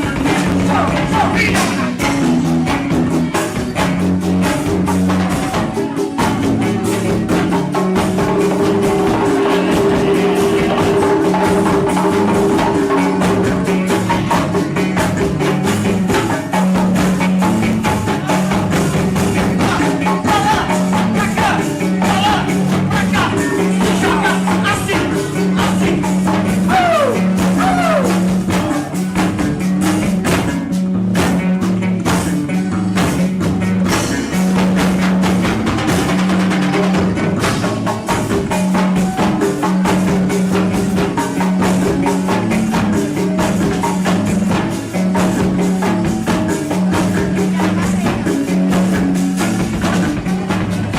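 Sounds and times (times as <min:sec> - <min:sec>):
loud dance music: 0:00.0 - 0:31.2.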